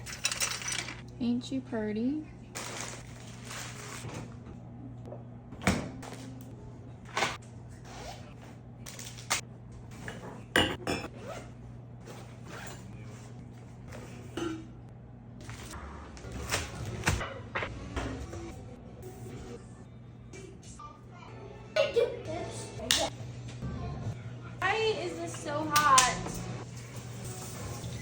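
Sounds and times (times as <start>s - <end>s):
dishes and utensils clinking: 10.0s - 11.2s, 14.0s - 14.8s.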